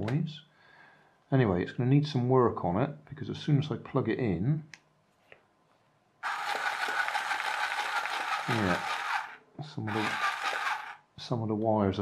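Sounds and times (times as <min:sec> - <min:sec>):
toy aeroplane motor whirring: 0:06.2 - 0:11.0.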